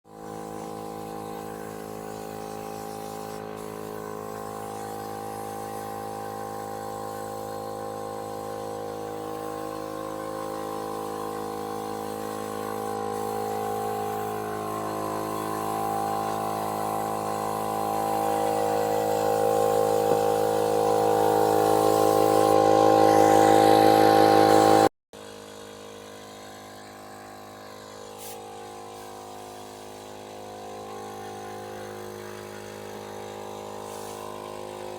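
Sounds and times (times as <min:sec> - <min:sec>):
air compressor humming: 0:00.1 - 0:24.9.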